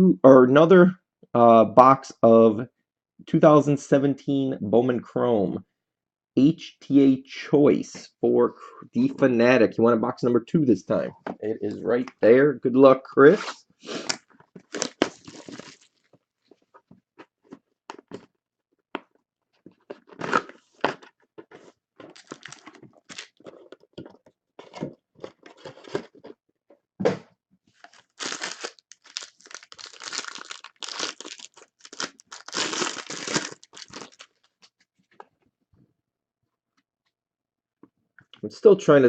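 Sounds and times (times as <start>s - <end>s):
wrapping tearing and crinkling: 14.0s - 16.1s, 19.9s - 23.8s, 24.6s - 26.4s, 27.8s - 34.6s.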